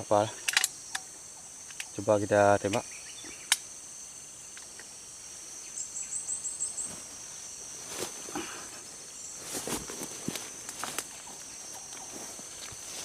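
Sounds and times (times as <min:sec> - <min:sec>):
high-pitched insect chorus: 0:00.0 - 0:13.0
faint rustles and knocks: 0:06.8 - 0:13.0.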